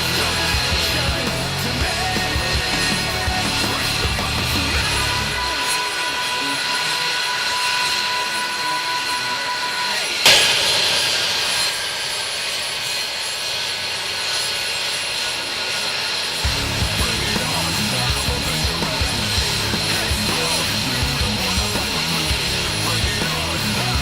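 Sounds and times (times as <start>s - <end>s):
jet engine idling: 0.0s - 24.0s.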